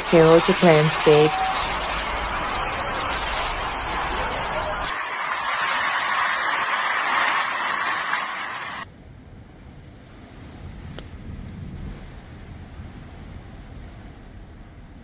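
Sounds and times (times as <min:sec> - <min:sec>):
low wind rumble: 0:00.0 - 0:15.0
wind and heavy rain: 0:00.0 - 0:15.0.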